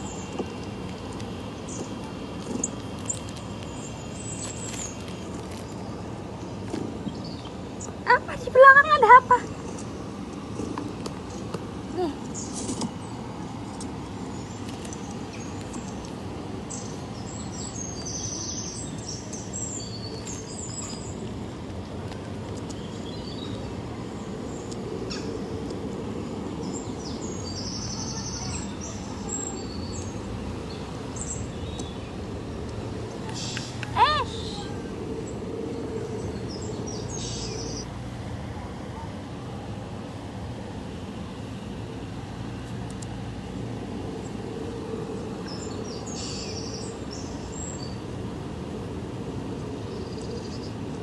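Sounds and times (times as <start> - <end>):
small birds chirping: 0.0 - 10.7, 11.3 - 21.4, 22.5 - 37.9, 45.4 - 48.1, 49.6 - 50.9
steady low background noise: 0.0 - 51.0
steady low rumble: 9.2 - 51.0
bird trill: 36.4 - 37.8.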